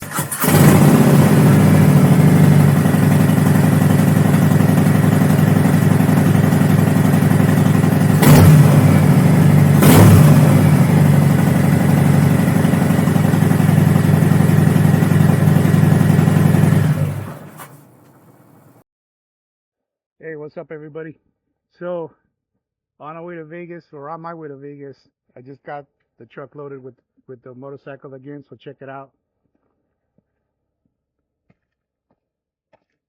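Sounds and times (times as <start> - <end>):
motorcycle engine idling: 0.0 - 18.8.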